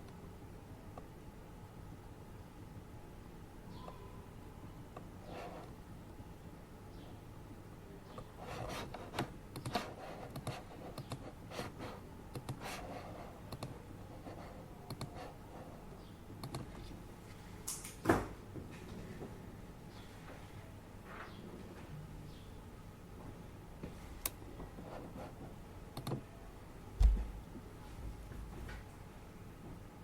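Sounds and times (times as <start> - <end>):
keyboard typing: 8.6 - 15.3, 16.4 - 16.8, 26.0 - 26.2.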